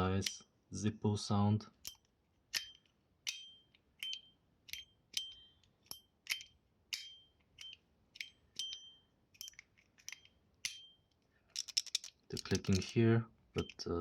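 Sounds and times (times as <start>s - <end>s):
fidget slider metallic clicks: 1.8s - 10.9s, 11.5s - 13.0s.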